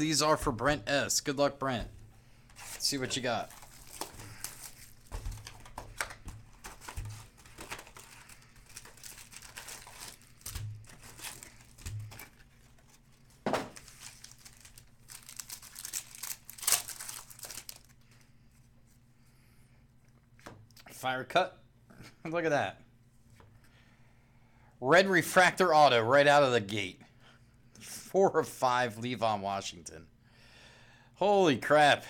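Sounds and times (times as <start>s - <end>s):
wrapping crinkling and rustling: 2.5s - 18.2s
sharp wrapper rips: 13.8s - 17.9s.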